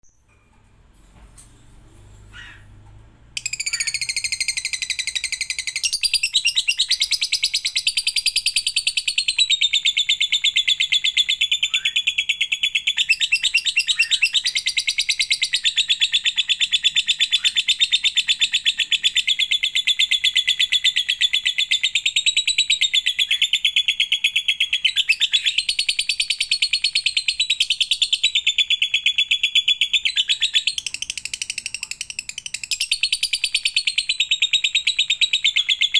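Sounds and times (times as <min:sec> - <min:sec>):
bird rattling trill: 0:03.4 - 0:06.0.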